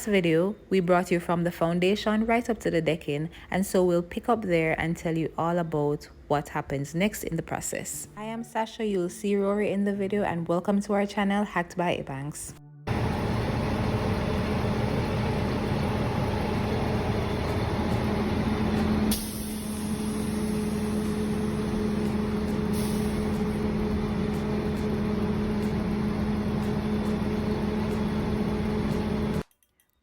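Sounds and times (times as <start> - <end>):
truck diesel engine running: 12.9 - 29.4
air hiss: 19.1 - 21.5, 22.5 - 23.4.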